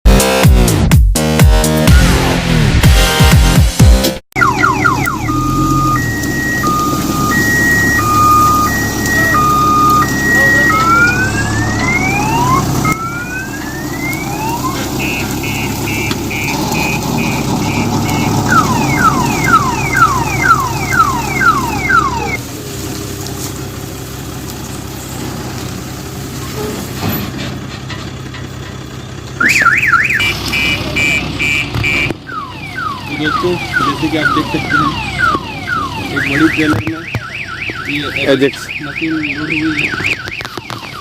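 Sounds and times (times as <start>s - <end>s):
vehicle alarm siren: 4.4s - 22.5s, 29.4s - 41.0s
diesel engine running: 4.4s - 41.0s.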